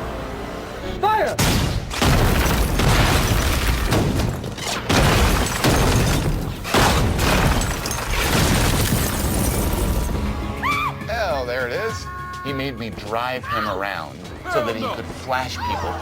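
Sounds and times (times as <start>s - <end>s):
debris crashing and shattering: 1.4s - 10.4s.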